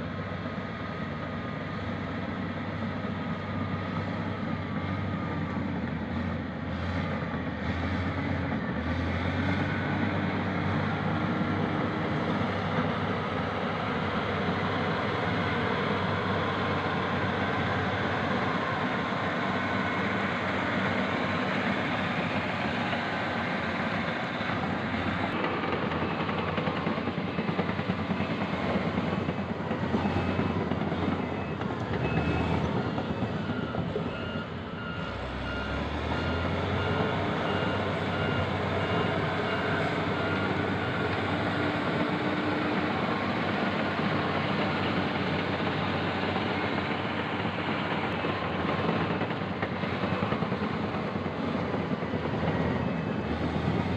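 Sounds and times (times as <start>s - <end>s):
diesel engines running: 0.0s - 53.9s
reversing alarm beeping: 25.4s - 50.6s.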